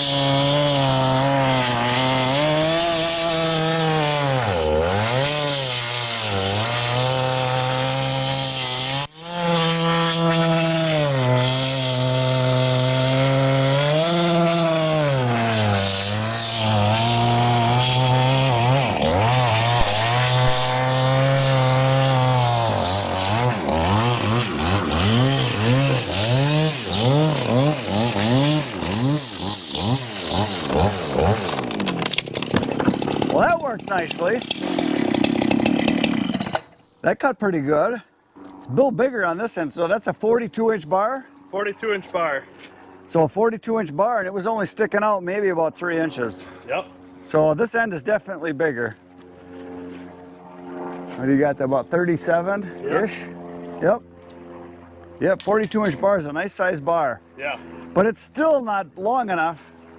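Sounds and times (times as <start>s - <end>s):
chainsaw cutting log: 0.0s - 36.9s, 55.2s - 56.4s.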